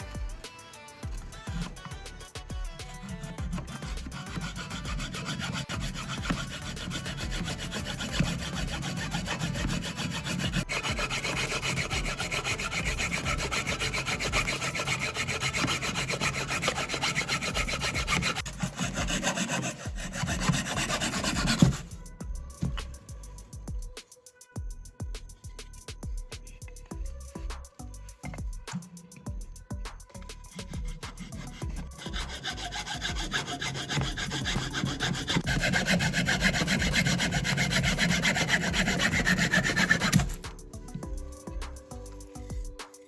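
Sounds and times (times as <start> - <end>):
metal rasping on abrasive: 0.0 - 23.7, 28.0 - 43.0.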